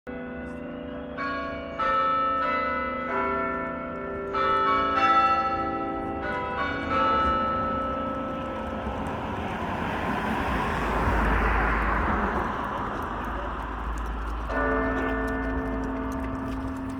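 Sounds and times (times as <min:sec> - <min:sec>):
carillon bells ringing: 0:00.1 - 0:08.9, 0:14.4 - 0:16.9.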